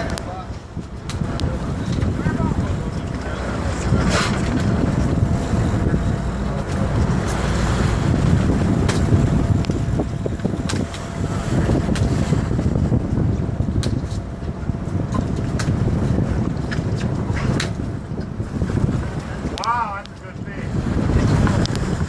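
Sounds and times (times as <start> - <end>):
boat low rumble: 0.0 - 22.0
wind buffeting microphone: 0.0 - 22.0.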